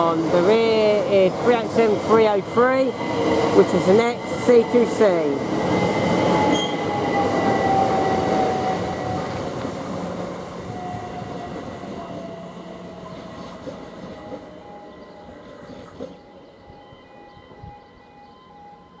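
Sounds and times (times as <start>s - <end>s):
train rumble: 0.0s - 18.0s
train whine: 0.0s - 19.0s
high brake squeal: 6.2s - 8.9s.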